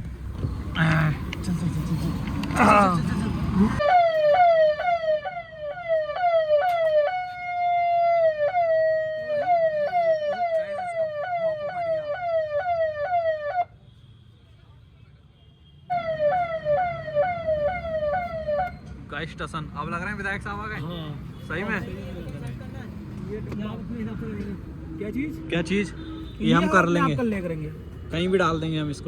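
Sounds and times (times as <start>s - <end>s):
electronic siren yelping: 3.8s - 13.7s, 15.9s - 18.8s.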